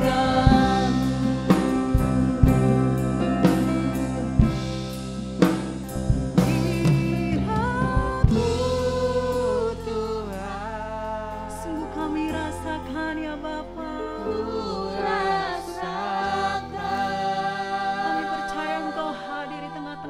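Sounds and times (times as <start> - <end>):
person singing slow melody: 0.0 - 4.8, 6.3 - 20.0
drum kit hits: 0.0 - 9.2
sustained chords: 0.0 - 20.0.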